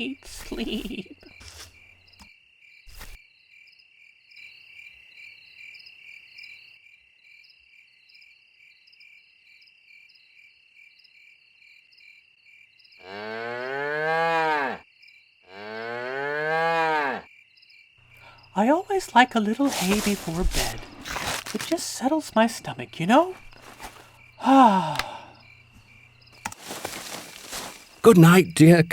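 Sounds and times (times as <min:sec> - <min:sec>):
crickets chirping: 0:00.0 - 0:28.9
cow mooing: 0:13.0 - 0:14.8, 0:15.5 - 0:17.3.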